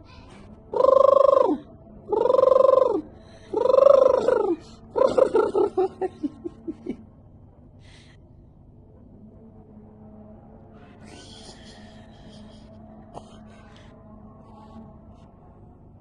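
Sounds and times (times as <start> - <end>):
bird hooting call: 0.7 - 6.0.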